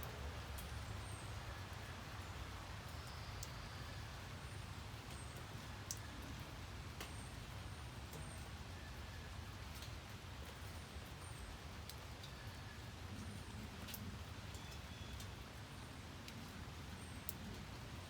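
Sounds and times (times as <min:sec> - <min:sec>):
steady rain: 0:00.0 - 0:18.0
raindrop clicks: 0:01.8 - 0:03.6, 0:04.5 - 0:08.6, 0:13.1 - 0:18.0.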